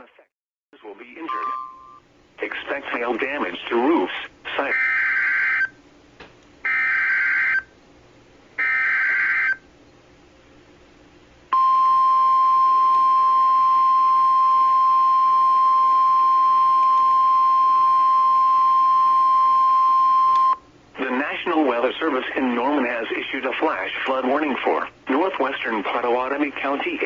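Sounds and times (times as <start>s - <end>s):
steady warning alarm tone: 4.7s - 5.8s, 6.7s - 7.7s, 8.6s - 9.6s, 11.5s - 20.6s.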